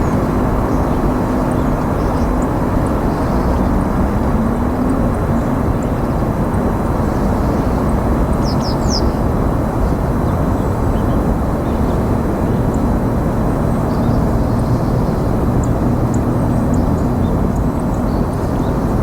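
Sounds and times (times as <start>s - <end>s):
small bird calling: 0.0s - 6.0s
low outdoor rumble: 0.0s - 19.0s.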